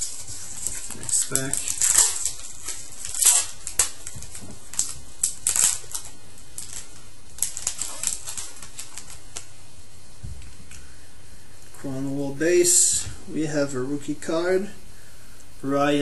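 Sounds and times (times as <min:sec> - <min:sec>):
wrapper being torn and crinkled: 0:00.0 - 0:09.5.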